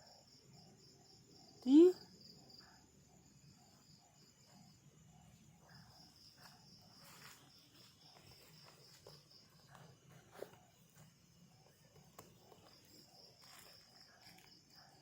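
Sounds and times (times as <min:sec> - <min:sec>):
night insects chirring: 0:00.0 - 0:15.0
faint clicks and rustles: 0:04.5 - 0:15.0.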